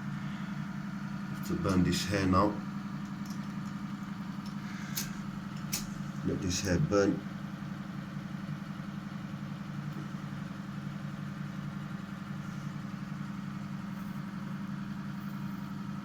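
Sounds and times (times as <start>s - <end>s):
motor humming: 0.0s - 7.7s.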